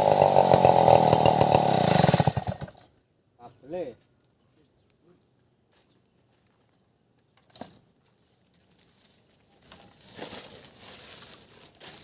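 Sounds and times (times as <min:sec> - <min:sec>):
rustling and crackling: 0:08.2 - 0:12.0.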